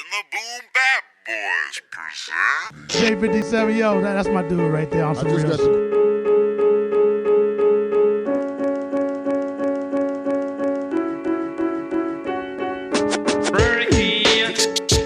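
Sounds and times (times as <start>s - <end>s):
electric piano chords: 2.9s - 14.0s.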